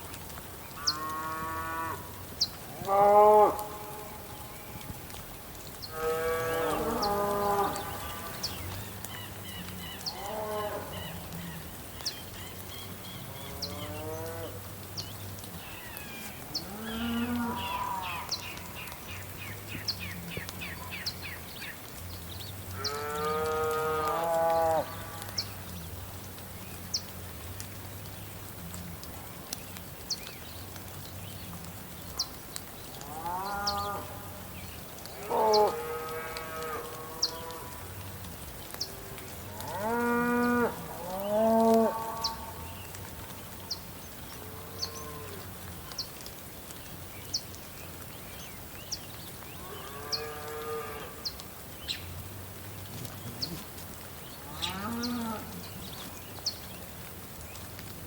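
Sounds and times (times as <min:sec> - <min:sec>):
light rain hissing: 0:00.0 - 0:58.0
faint high ticks: 0:00.1 - 0:12.8, 0:13.6 - 0:48.2
cows mooing: 0:02.7 - 0:04.2, 0:05.9 - 0:08.4, 0:10.1 - 0:11.0, 0:16.6 - 0:18.3, 0:22.8 - 0:25.2, 0:39.6 - 0:42.6, 0:54.5 - 0:55.6.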